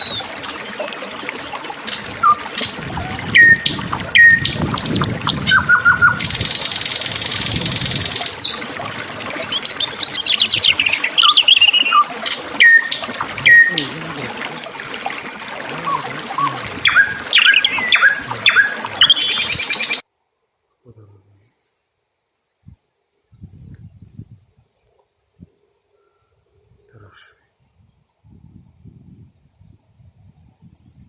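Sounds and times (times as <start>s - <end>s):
songbirds chirping and trilling: 0.0s - 20.0s.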